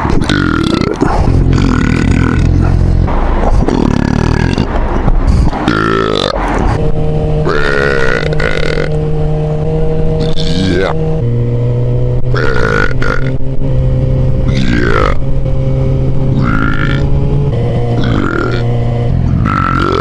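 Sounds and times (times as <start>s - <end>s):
man belching: 0.0s - 2.8s, 3.6s - 4.7s, 5.5s - 6.4s, 7.4s - 9.0s, 10.2s - 11.0s, 12.3s - 13.4s, 14.5s - 15.2s, 16.3s - 17.1s, 18.0s - 18.7s, 19.3s - 20.0s
engine hum: 0.0s - 20.0s.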